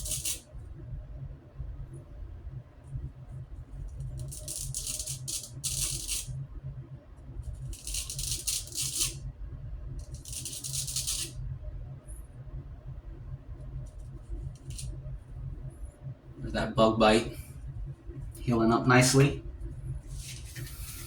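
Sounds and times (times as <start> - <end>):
razor scraping stubble: 4.2 - 6.3, 7.7 - 9.2, 10.1 - 11.3.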